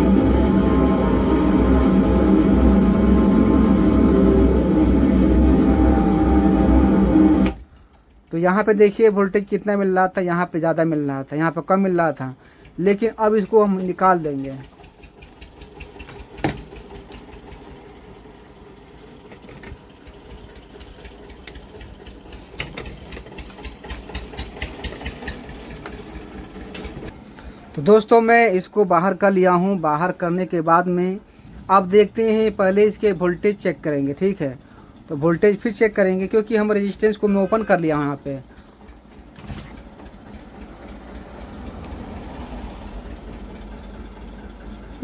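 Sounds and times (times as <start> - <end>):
distorted bass-heavy music from speaker: 0.0 - 7.5
steady low hum: 0.0 - 8.2
tools clicking and tapping: 20.8 - 26.0.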